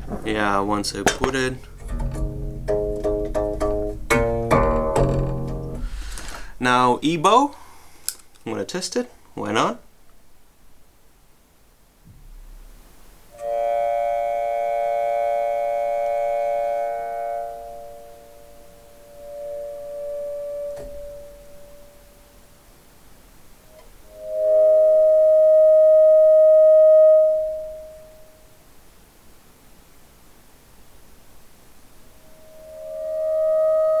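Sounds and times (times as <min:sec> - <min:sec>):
ebow sustaining metal harp strings: 0:00.0 - 0:06.8.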